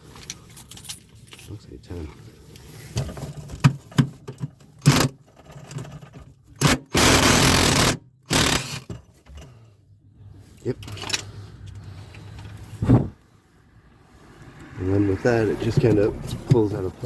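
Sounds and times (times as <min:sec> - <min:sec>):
rapid ratcheting: 0:04.8 - 0:05.2, 0:06.6 - 0:08.9
ratchet clicks and knocks: 0:04.8 - 0:09.0.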